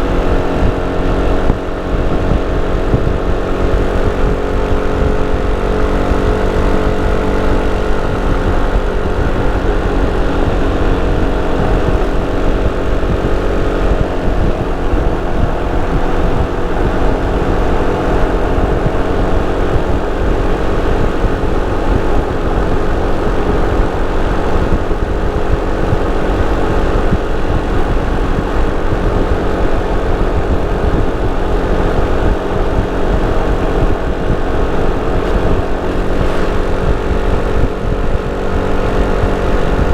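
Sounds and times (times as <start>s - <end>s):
scooter engine running: 0.0s - 39.9s.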